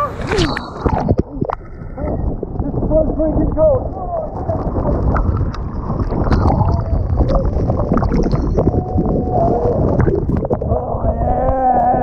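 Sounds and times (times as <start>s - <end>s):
water splashing: 0.0s - 11.2s
water knocking on microphone: 4.4s - 9.2s.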